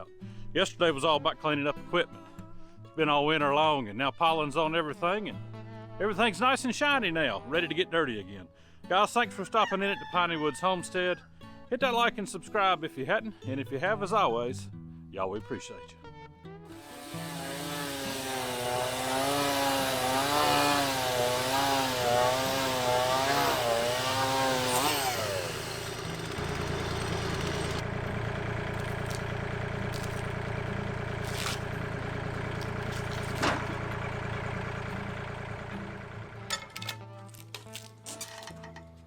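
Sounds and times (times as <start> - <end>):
saw blade cutting wood: 16.7 - 27.9, 28.7 - 30.4, 31.2 - 31.8, 32.5 - 34.0
gas engine running: 16.7 - 36.6.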